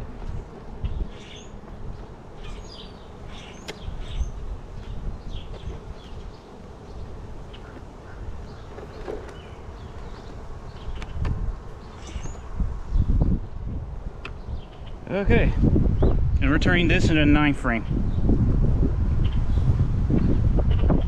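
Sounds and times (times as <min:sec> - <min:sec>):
honey bees buzzing: 0:00.0 - 0:16.4
wind rumble on microphone: 0:00.0 - 0:21.0.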